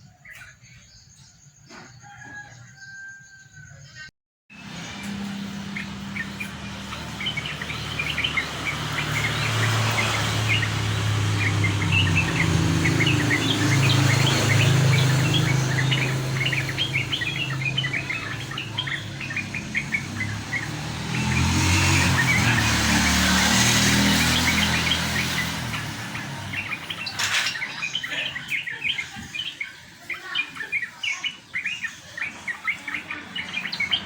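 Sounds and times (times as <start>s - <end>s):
birds chirping: 0.0s - 34.0s
low engine drone: 4.5s - 26.9s.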